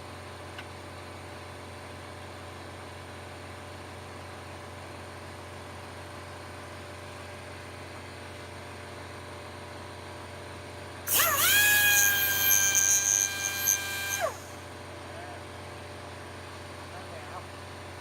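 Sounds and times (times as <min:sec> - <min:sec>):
electric power tool motor whining: 0:11.1 - 0:14.7.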